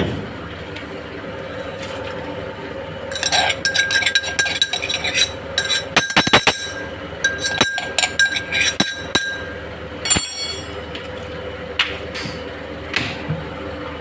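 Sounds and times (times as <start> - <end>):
steady hum: 0.0 - 12.2
metal clinks against steel pot: 3.1 - 10.8.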